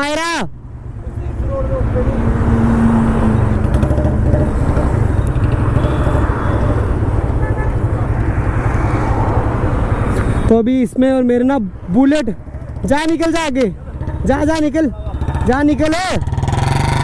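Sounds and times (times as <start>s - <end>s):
motorcycle engine running: 0.6s - 8.2s, 12.4s - 17.0s.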